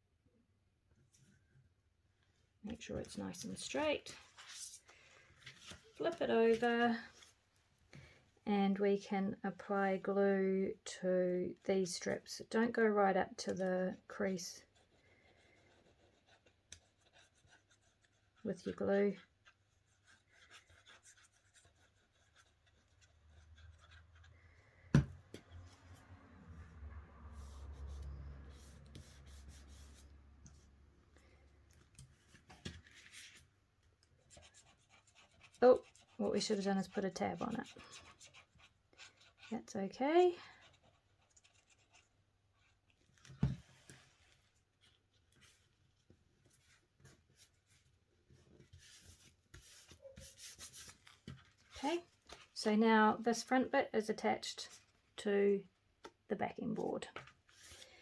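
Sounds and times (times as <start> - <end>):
scratchy rubbing on paper: 14.5 - 24.4, 34.2 - 39.7.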